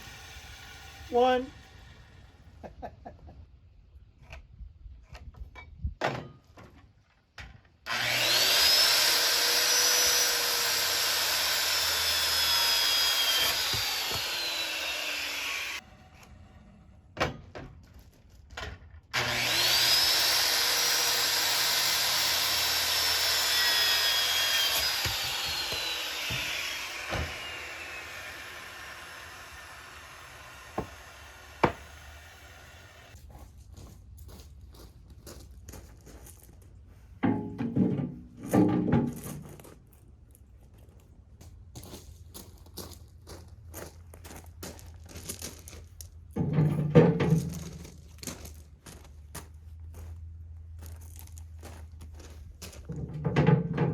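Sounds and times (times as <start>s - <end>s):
power saw cutting wood: 0.0s - 2.7s, 7.9s - 17.2s, 19.1s - 33.2s.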